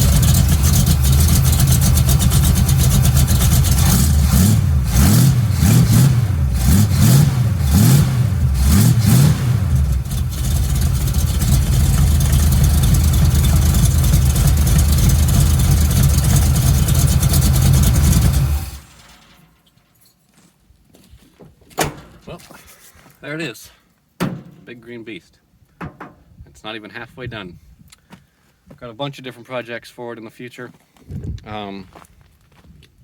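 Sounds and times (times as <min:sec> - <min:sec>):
pickup engine revving and idling: 0:00.0 - 0:19.0.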